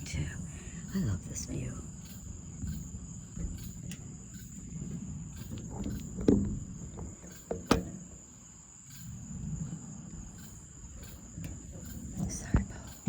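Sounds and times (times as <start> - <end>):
crickets trilling: 0.0 - 13.0
sharp knocks: 5.4 - 8.2.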